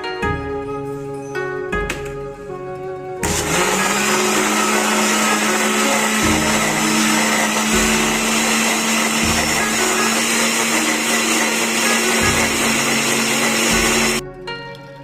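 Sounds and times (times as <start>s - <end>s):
electric blender motor running: 3.2s - 14.2s.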